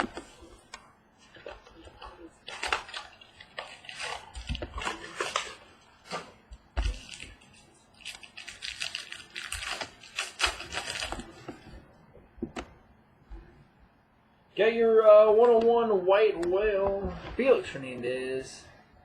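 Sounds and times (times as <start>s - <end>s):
cardboard rustling and scraping: 1.2s - 7.6s.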